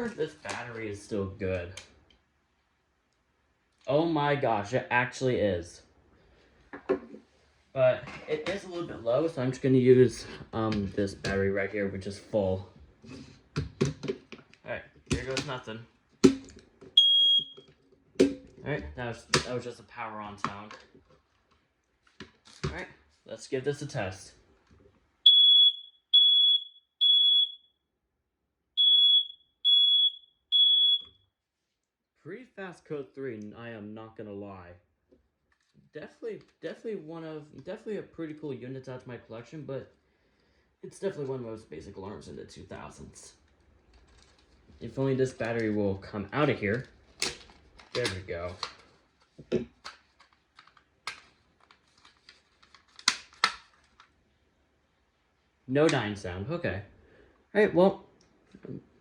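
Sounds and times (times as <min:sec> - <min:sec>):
smoke alarm beeping: 0:17.0 - 0:17.7, 0:25.3 - 0:27.8, 0:28.8 - 0:31.2.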